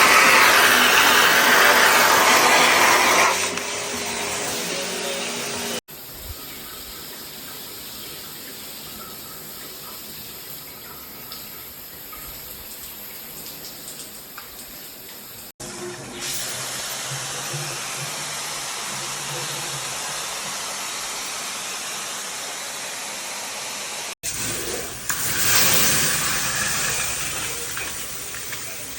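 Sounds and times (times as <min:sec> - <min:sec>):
shower head spraying water: 0:00.0 - 0:05.8, 0:16.2 - 0:28.9.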